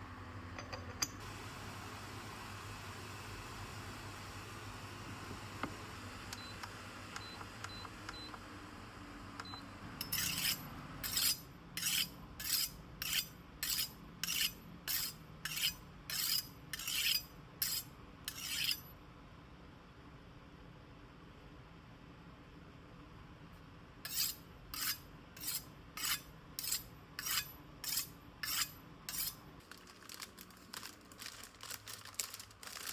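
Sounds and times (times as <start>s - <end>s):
knife sharpening strokes: 10.0s - 18.9s, 24.1s - 29.4s.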